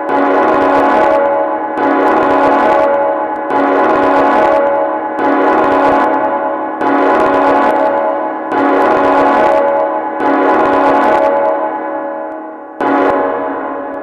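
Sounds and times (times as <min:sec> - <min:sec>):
metallic bell-like ringing: 0:06.2 - 0:14.0.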